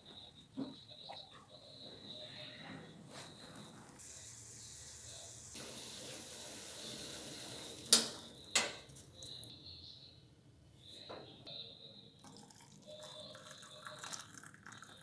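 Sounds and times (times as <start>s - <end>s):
water running: 3.8s - 9.0s, 12.2s - 15.0s
kitchenware clinking: 7.8s - 9.5s.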